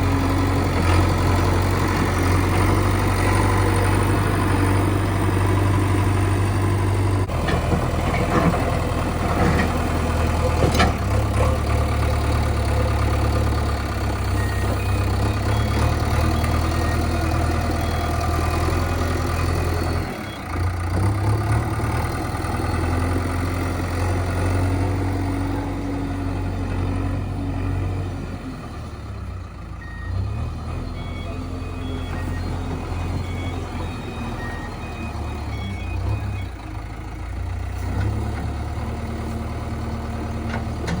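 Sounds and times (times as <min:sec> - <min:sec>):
diesel engine under load: 0:00.0 - 0:41.0
reversing alarm beeps: 0:14.2 - 0:20.6, 0:29.0 - 0:37.1.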